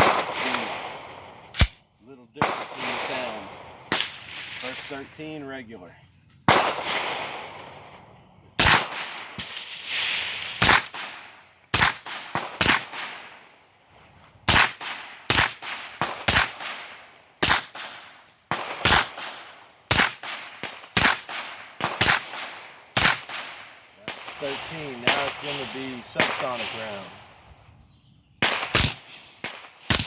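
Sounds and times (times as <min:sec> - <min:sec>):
suppressed pistol shots: 0:00.0 - 0:01.8, 0:10.6 - 0:13.3, 0:14.5 - 0:27.2, 0:28.4 - 0:30.0.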